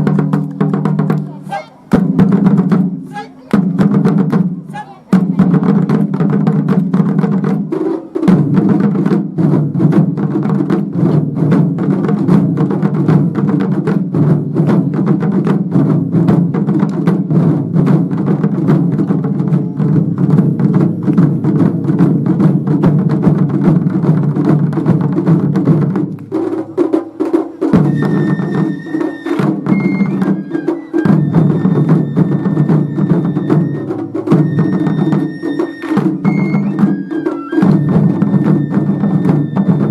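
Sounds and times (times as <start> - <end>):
ensemble playing taiko drums: 0.0 - 39.9
high held piping notes: 27.8 - 39.9.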